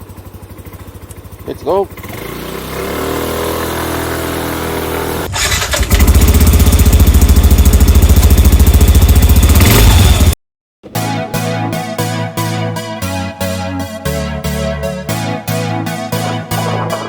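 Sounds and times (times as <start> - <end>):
scooter engine running: 0.0 - 10.4, 16.0 - 17.0
keyboard music: 10.8 - 17.0.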